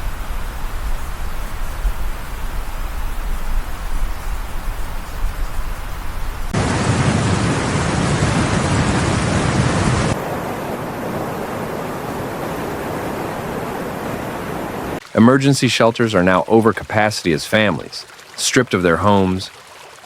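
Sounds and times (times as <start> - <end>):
floodwater rushing: 6.5 - 20.0.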